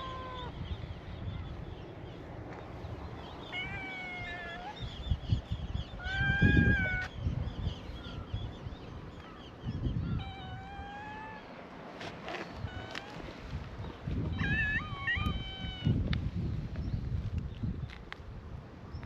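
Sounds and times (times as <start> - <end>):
cat meowing: 0.0 - 0.5, 3.5 - 4.8, 6.0 - 7.1, 10.1 - 11.5, 14.3 - 16.0
faint meows of other cats: 0.0 - 0.5, 3.5 - 4.8, 6.0 - 7.1, 10.1 - 11.5, 14.3 - 16.0.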